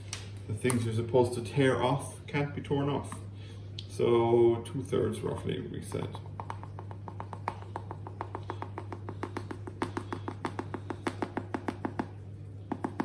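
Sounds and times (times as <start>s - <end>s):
steady low hum: 0.0s - 13.0s
fast light tapping: 6.2s - 13.0s.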